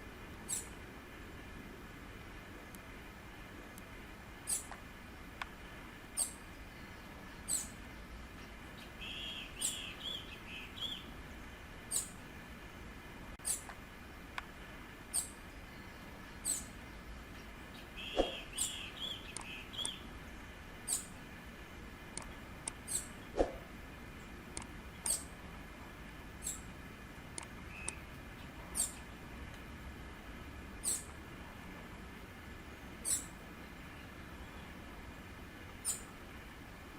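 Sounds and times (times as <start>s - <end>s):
bird warbling: 0.4s - 0.8s, 4.4s - 4.8s, 6.1s - 6.5s, 7.3s - 7.8s, 8.8s - 11.1s, 11.9s - 12.2s, 13.4s - 13.7s, 15.1s - 15.4s, 16.3s - 16.8s, 17.7s - 20.1s, 20.8s - 21.2s, 22.8s - 23.6s, 25.0s - 25.4s, 26.4s - 26.7s, 28.7s - 29.1s, 30.8s - 31.1s, 33.0s - 33.4s, 35.8s - 36.2s
high sharp bird calls: 0.4s - 0.8s, 4.4s - 4.8s, 6.1s - 8.0s, 8.8s - 11.2s, 11.9s - 12.2s, 13.4s - 13.7s, 15.1s - 20.1s, 20.8s - 21.2s, 22.8s - 23.6s, 25.0s - 25.4s, 26.4s - 26.7s, 28.7s - 29.1s, 30.8s - 31.1s, 33.0s - 33.4s, 35.8s - 36.2s.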